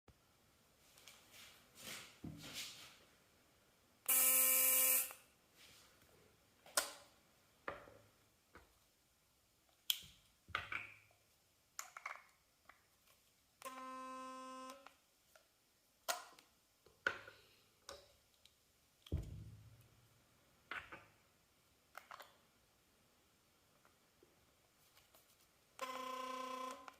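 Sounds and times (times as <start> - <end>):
electric toothbrush buzzing: 4.1 - 5.2.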